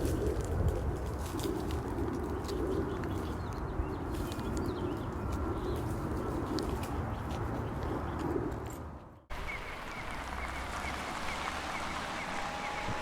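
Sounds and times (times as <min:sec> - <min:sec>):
background rumble: 0:09.3 - 0:13.0
birds cooing: 0:09.3 - 0:13.0.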